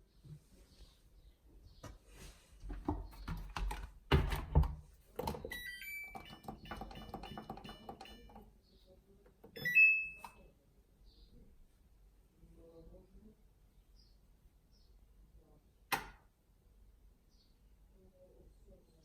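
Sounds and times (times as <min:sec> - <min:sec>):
short beeps: 0:05.5 - 0:08.4, 0:09.6 - 0:10.4.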